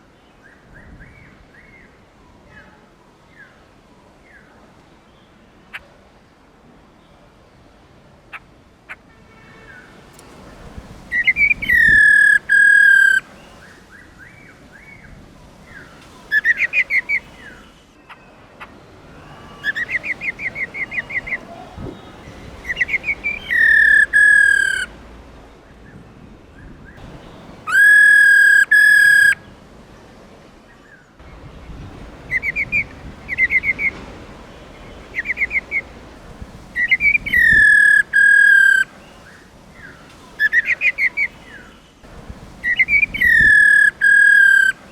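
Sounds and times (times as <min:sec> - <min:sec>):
laughingthrush whistled calls: 0:11.1 - 0:15.0, 0:15.7 - 0:18.3, 0:19.1 - 0:24.9, 0:27.0 - 0:29.5, 0:32.0 - 0:41.9, 0:42.6 - 0:44.9
bird quick repeated notes: 0:22.6 - 0:24.9.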